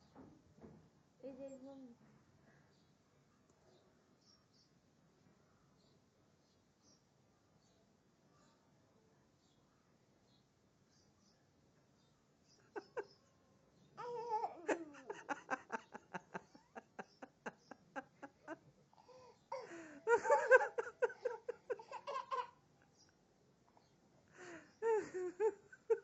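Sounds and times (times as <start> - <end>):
young child laughing: 14.0 - 22.6.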